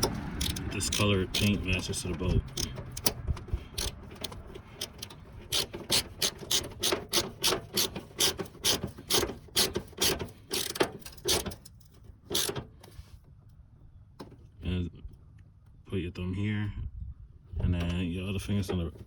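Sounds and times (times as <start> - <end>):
hand ratchet clicking: 0.0 - 12.6.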